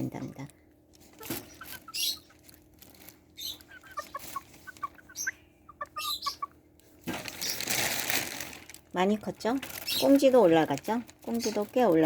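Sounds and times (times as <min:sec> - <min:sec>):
rustling: 0:00.9 - 0:05.2, 0:06.8 - 0:12.0
hen clucking chirps: 0:01.1 - 0:02.6, 0:03.3 - 0:07.8, 0:09.8 - 0:10.5.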